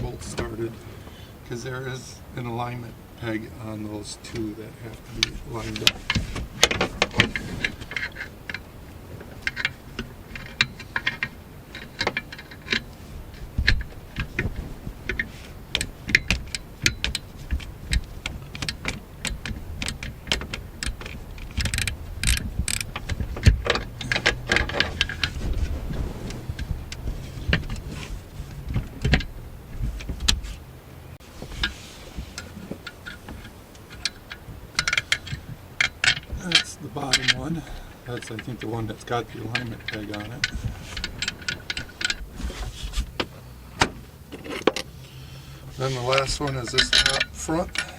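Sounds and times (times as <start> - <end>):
ratchet clicking: 15.1 - 25.4.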